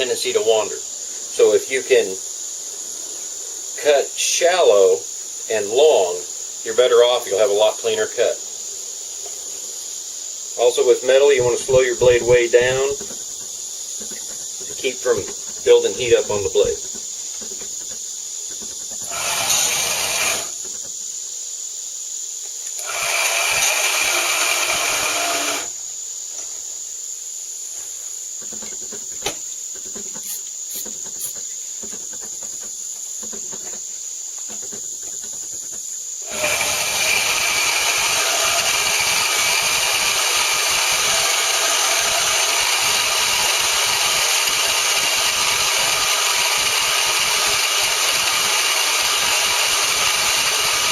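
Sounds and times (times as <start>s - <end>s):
band saw running: 19.0s - 20.6s, 22.8s - 25.8s, 36.2s - 50.9s.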